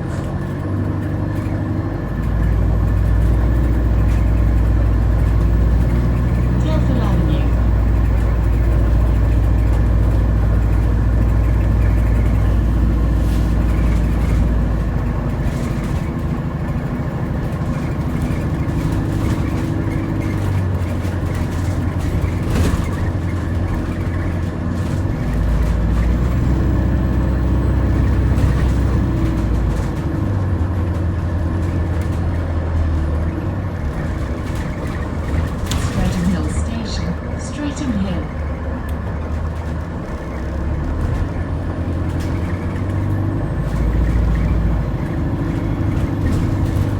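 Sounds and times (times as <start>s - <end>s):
bus low hum: 0.0s - 46.9s.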